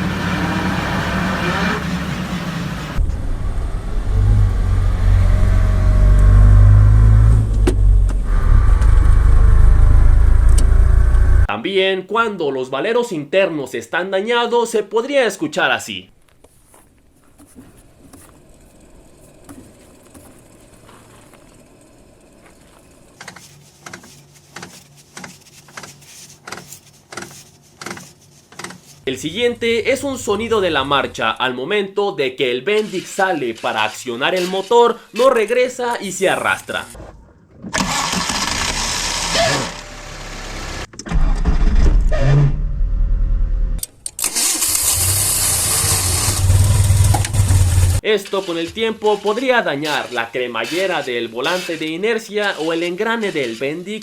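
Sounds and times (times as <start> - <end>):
car differential humming: 0.0 - 11.5, 16.2 - 31.4
starter gear grinding: 17.3 - 31.2, 37.5 - 40.0, 43.8 - 54.0
starter motor cranking engine: 37.7 - 41.9, 44.0 - 48.0.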